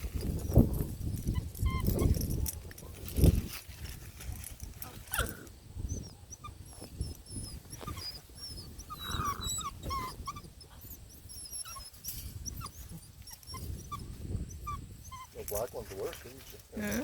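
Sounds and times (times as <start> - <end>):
puppies whimpering and yipping: 0.2 - 2.6, 5.0 - 15.7.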